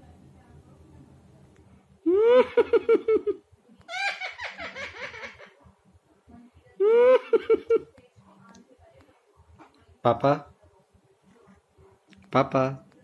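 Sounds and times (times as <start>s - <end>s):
parrot mimicking laughter: 3.9s - 5.6s.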